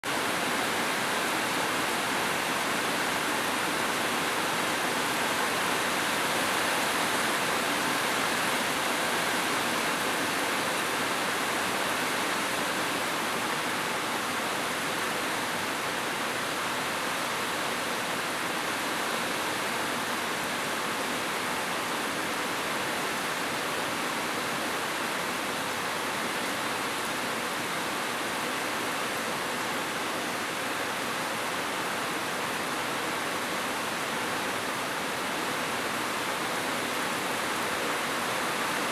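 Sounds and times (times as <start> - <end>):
flowing water rushing: 0.1 - 38.9.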